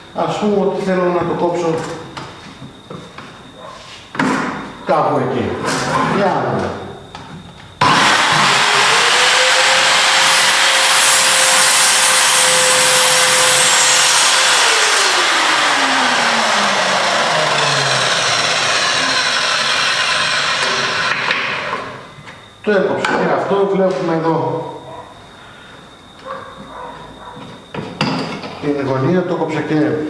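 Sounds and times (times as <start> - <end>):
mitre saw cutting wood: 7.8 - 21.9.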